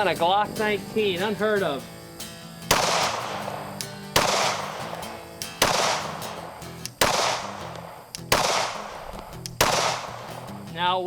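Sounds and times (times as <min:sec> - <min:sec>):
gunshots with echo: 0:02.7 - 0:10.5.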